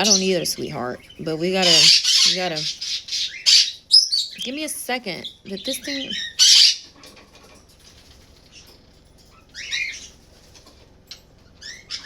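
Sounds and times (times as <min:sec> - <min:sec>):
parrot squawking: 0:00.0 - 0:04.6, 0:05.2 - 0:07.0, 0:11.6 - 0:12.0.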